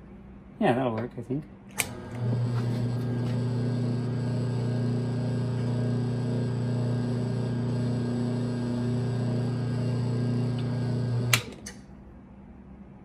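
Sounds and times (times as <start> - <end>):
machine motor humming: 1.8 - 11.6.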